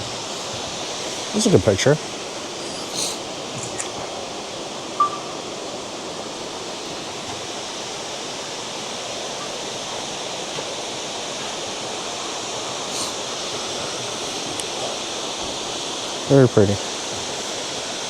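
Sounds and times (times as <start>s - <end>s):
waterfall rushing: 0.0s - 18.0s.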